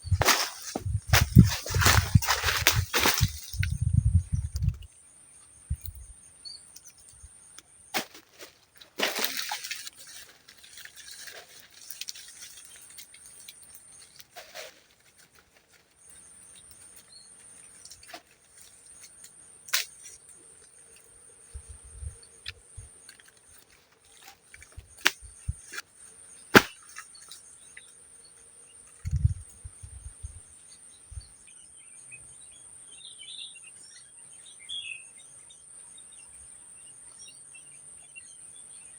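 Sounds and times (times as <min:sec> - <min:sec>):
short low thumps: 0:00.0 - 0:04.8.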